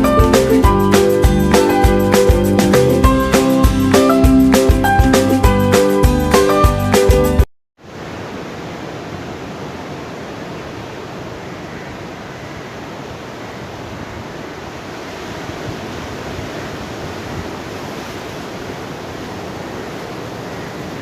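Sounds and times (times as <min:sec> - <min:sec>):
sea surf washing onto beach: 0:07.8 - 0:21.0.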